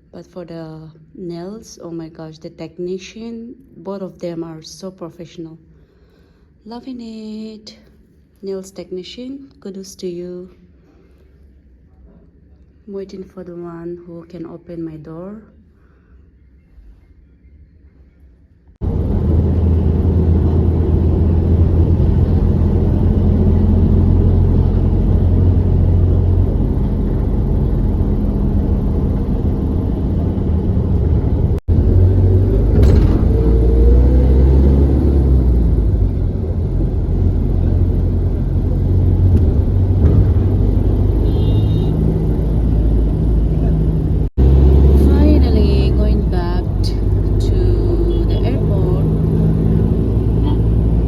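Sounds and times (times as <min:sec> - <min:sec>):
vehicle road rumble: 0:18.8 - 0:51.0.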